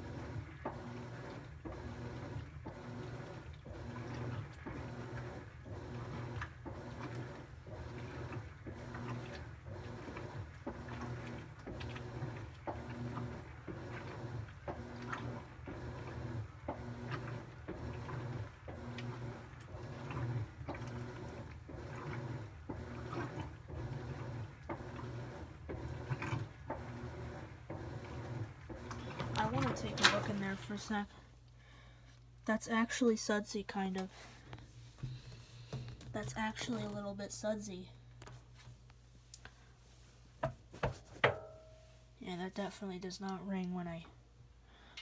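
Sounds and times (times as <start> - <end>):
low motor hum: 0.0 - 31.5
churning of sudsy water: 0.0 - 32.0, 33.8 - 37.6
washing machine agitating: 0.0 - 45.0.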